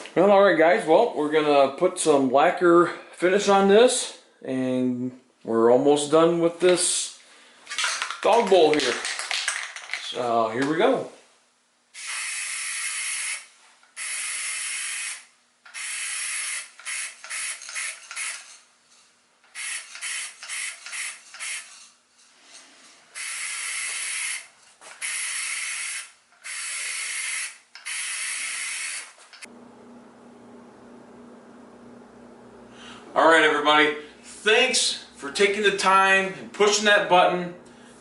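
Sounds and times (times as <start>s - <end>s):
spray gun hissing bursts: 12.0s - 18.5s, 19.5s - 21.8s, 23.2s - 29.2s.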